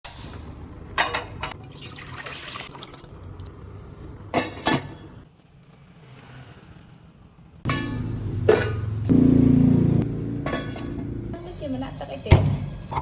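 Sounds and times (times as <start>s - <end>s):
kitchenware clinking: 1.0s - 1.7s, 4.3s - 5.2s, 7.7s - 8.9s, 10.4s - 11.1s
water pouring and splashing: 1.6s - 3.5s.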